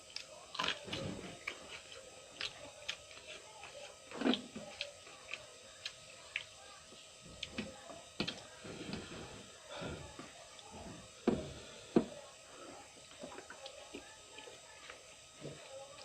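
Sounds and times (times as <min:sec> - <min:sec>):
chewing crunches: 0:00.0 - 0:06.7.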